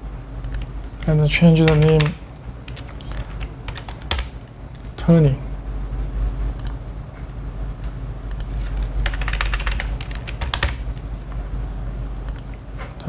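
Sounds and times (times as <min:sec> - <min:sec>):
low steady hum: 0:00.0 - 0:13.0
computer keyboard typing: 0:00.4 - 0:05.0, 0:08.3 - 0:11.0, 0:12.2 - 0:12.6.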